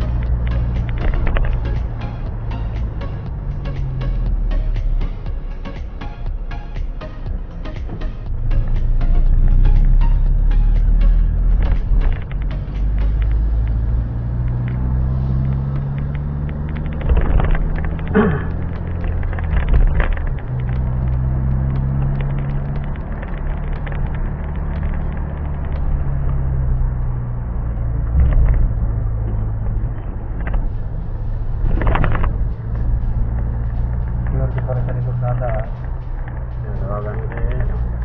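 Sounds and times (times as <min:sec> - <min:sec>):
vehicle engine and road rumble: 0:00.0 - 0:38.0
small knocks and rattles: 0:15.4 - 0:26.0.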